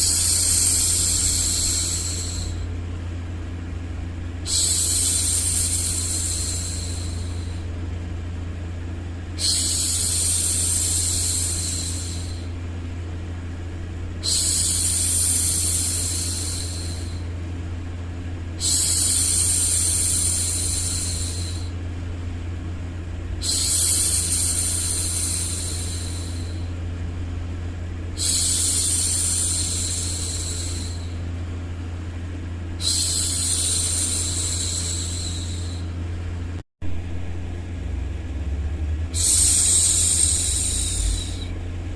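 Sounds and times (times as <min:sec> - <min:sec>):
white noise hum: 0:00.0 - 0:41.9
woman shushing: 0:09.4 - 0:12.5, 0:39.1 - 0:41.6.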